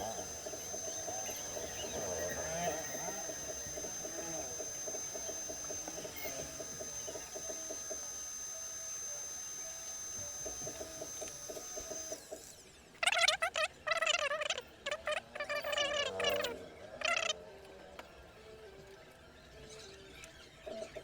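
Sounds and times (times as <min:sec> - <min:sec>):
bird cooing: 0:00.0 - 0:06.5
loud warbling animal calls: 0:00.0 - 0:06.6
faint high whine: 0:00.0 - 0:12.2.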